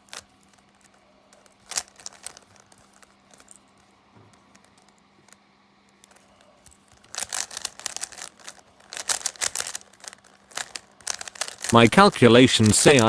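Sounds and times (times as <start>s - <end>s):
puzzle cube layers clicking: 6.1s - 13.0s.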